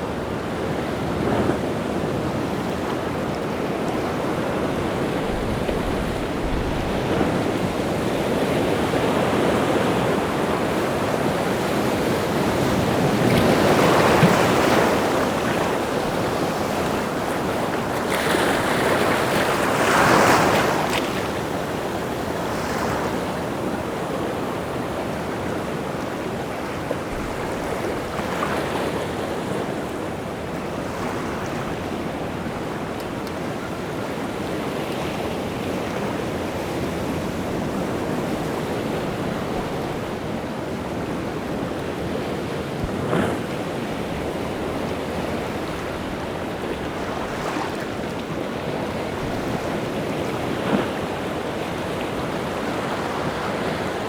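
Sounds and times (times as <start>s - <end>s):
waves breaking on rocky shore: 0.1s - 54.0s
strong wind: 4.0s - 16.6s.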